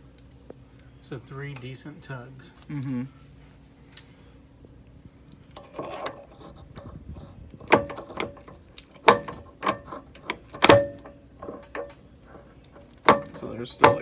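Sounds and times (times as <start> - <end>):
sharp metal clanks: 13.0 - 14.0.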